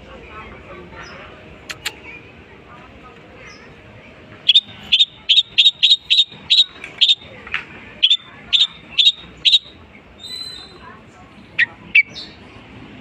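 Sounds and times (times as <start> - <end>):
bird calling sharp high notes: 4.5 - 7.4, 8.0 - 10.8.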